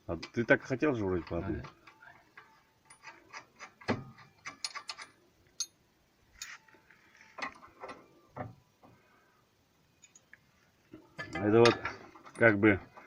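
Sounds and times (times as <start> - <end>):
metallic clicks of nuts and wrench: 1.2 - 5.8.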